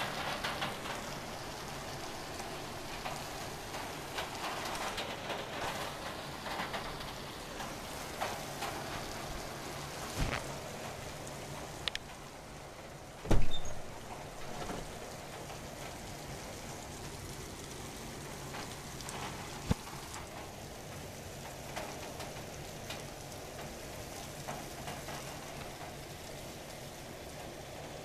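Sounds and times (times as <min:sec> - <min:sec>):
rain falling: 0:00.0 - 0:28.0.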